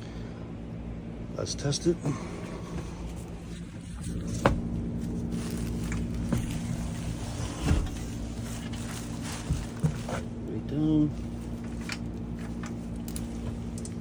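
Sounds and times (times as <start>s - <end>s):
steady low hum: 0.0s - 14.0s
seat mechanism knocks and clunks: 2.6s - 5.0s, 5.9s - 10.3s.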